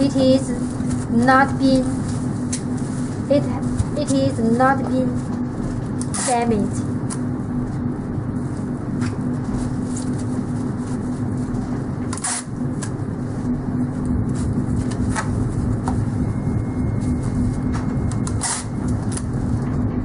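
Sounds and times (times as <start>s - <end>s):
low machinery hum: 0.0s - 20.0s
packing material rustling: 0.4s - 4.4s.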